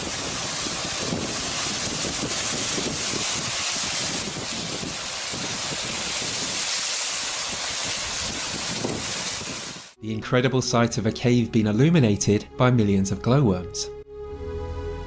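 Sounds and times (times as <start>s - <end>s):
wind buffeting the microphone: 0.0s - 9.9s.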